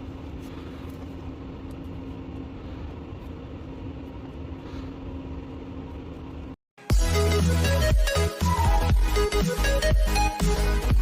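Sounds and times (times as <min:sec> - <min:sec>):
mechanical hum with low rumble: 0:00.0 - 0:06.6.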